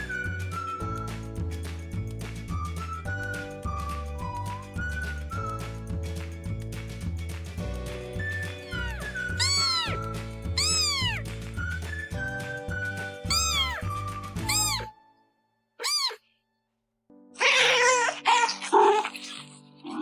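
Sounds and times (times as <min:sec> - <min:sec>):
background music: 0:00.0 - 0:15.5
cat meowing: 0:08.7 - 0:10.0, 0:10.6 - 0:11.2, 0:13.3 - 0:14.9, 0:15.8 - 0:16.2, 0:17.4 - 0:19.1.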